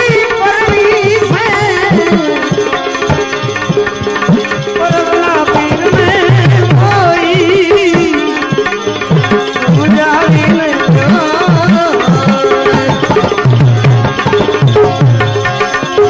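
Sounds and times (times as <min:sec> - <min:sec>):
tabla strokes: 0:00.0 - 0:16.0
wavering melody line: 0:00.5 - 0:16.0.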